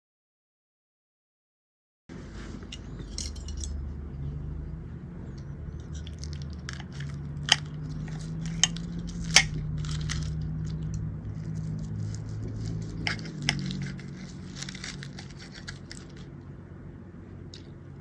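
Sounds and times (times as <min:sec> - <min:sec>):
steady low hum: 0:02.1 - 0:18.0
cutlery and dishes clinking: 0:02.7 - 0:03.8.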